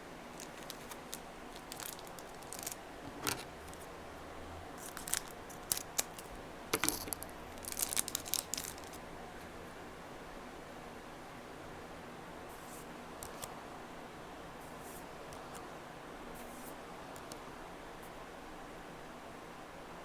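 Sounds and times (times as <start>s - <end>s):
packaging crinkling and tearing: 0.4s - 3.9s, 4.8s - 9.0s.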